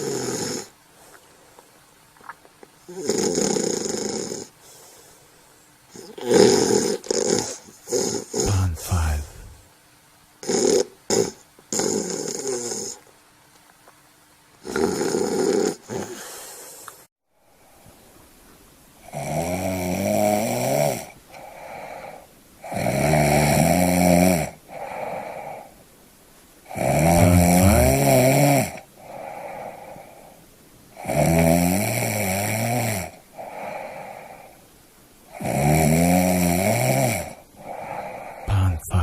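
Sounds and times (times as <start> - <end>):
loud rattly snoring: 0.0 - 0.7, 2.9 - 4.6, 5.9 - 8.5, 10.4 - 13.0, 14.6 - 16.2, 19.1 - 21.1, 22.6 - 25.1, 26.7 - 29.9, 31.0 - 33.8, 35.4 - 37.9.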